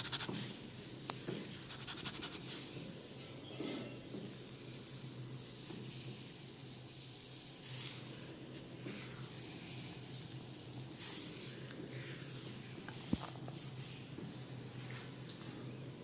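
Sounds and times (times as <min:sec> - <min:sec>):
fingers scratching through hair: 0:00.0 - 0:00.5, 0:01.5 - 0:02.6.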